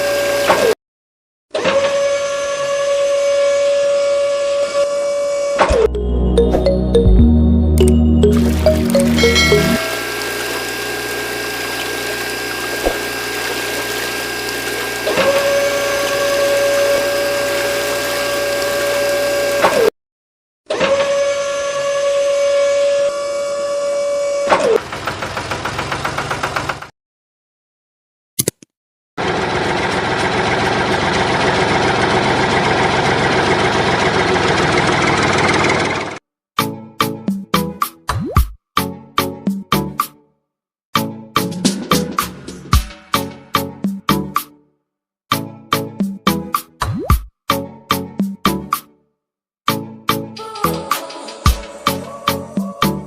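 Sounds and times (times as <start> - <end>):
small electric motor running: 9.9 - 19.6.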